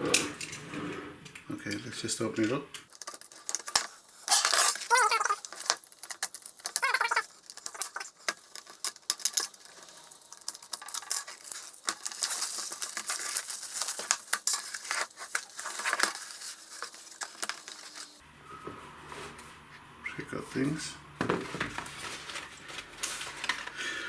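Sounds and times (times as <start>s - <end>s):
packaging crinkling and rustling: 2.9s - 18.2s, 21.2s - 24.0s.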